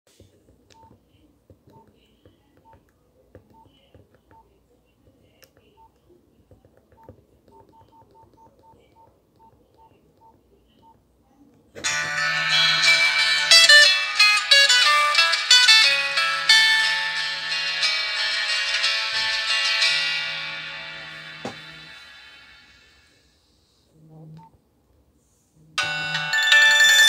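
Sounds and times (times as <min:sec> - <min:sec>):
phone ringtone: 0:11.8 - 0:22.4, 0:25.8 - 0:27.0.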